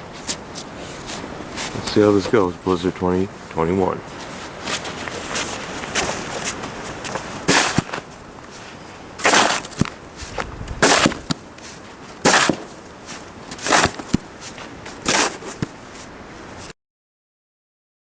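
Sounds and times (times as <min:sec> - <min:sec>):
snow shovel scraping on deck: 0:04.1 - 0:16.7.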